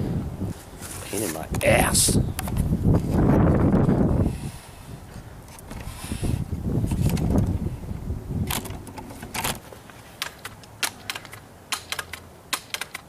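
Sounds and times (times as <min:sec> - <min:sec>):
rifle handling rumble: 0:06.8 - 0:07.6, 0:08.4 - 0:13.0.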